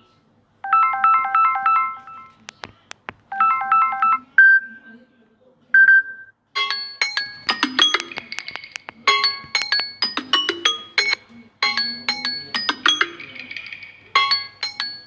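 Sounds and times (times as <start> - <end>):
phone ringtone melody: 0.6 - 2.4, 3.3 - 4.8, 6.6 - 15.0.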